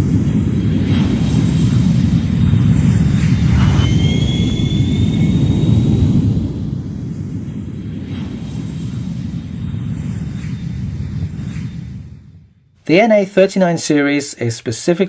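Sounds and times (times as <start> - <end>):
aircraft rumble overhead: 0.0 - 12.2
thin rising whine: 3.1 - 7.1.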